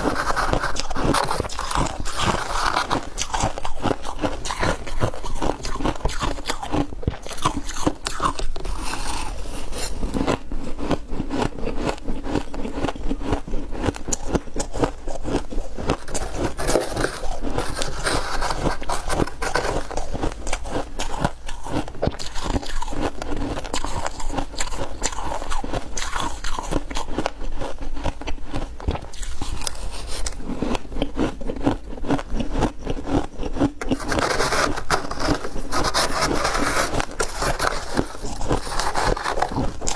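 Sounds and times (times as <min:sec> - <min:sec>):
spoon scraping through ice: 0:00.0 - 0:11.0, 0:14.7 - 0:23.0, 0:29.1 - 0:30.4, 0:33.8 - 0:39.9
ice crunching being chewed: 0:00.0 - 0:39.9.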